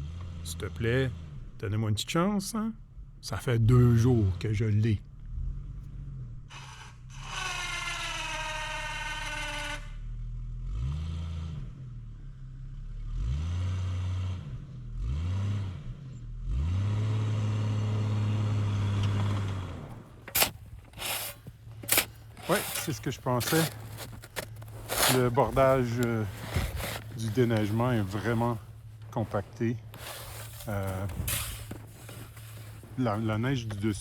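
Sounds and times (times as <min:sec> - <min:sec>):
car engine revving: 0:13.1 - 0:34.0.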